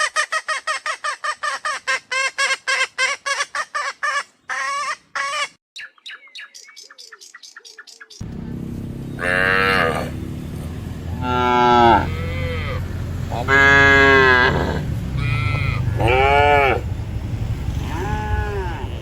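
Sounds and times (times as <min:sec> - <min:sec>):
low background rumble: 0:08.2 - 0:19.0
cattle mooing: 0:09.2 - 0:10.2, 0:11.1 - 0:17.0, 0:17.8 - 0:19.0.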